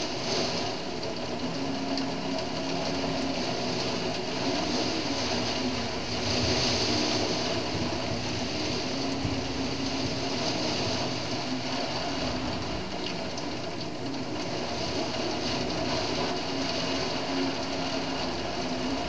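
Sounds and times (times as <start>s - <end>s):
faint steady hum: 0.0s - 19.0s
heavy rainfall: 0.0s - 19.0s.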